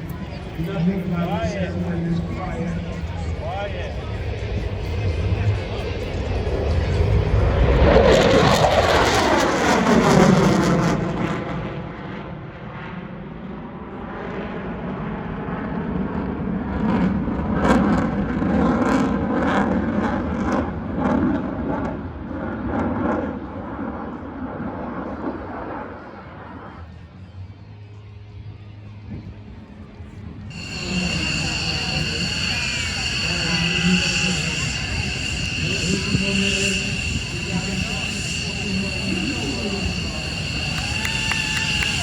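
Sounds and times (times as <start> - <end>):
airplane passing overhead: 0.0 - 18.4, 30.2 - 42.0.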